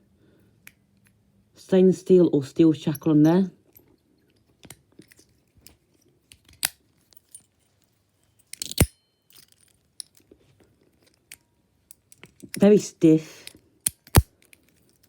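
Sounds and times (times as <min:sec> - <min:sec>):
small metallic padlock clicks: 0:03.2 - 0:07.5, 0:08.4 - 0:10.3, 0:11.0 - 0:12.7, 0:13.4 - 0:15.0.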